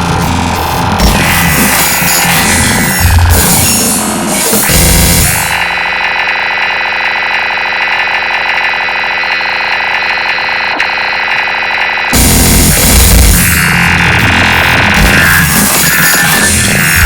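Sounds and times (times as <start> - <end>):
pulsing buzzy alarm ringtone: 4.6 - 6.0.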